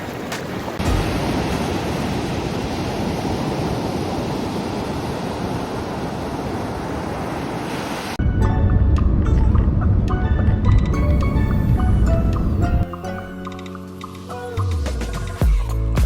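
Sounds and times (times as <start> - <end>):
sea surf washing onto beach: 0.0 - 8.2.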